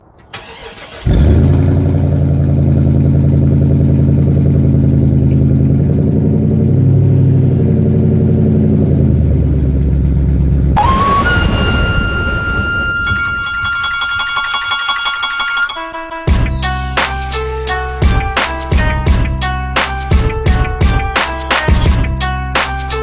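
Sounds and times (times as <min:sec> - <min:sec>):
engine starting and running: 0:00.0 - 0:13.9.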